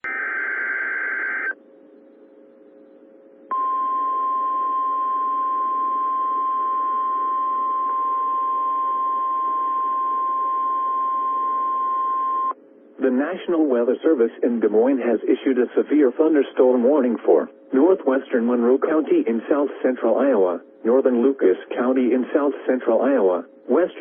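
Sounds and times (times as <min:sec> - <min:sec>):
steady warning alarm tone: 0:00.0 - 0:01.6, 0:03.5 - 0:12.6
faint hiss and hum: 0:00.1 - 0:08.0, 0:08.8 - 0:24.0.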